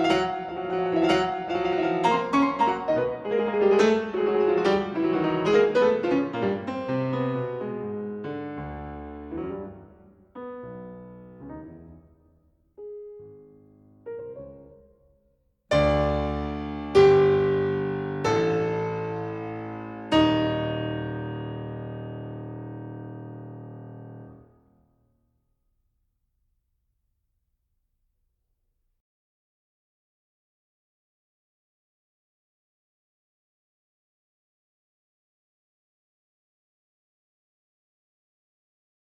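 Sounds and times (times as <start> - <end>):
piano music: 0.0 - 15.1, 15.7 - 24.5.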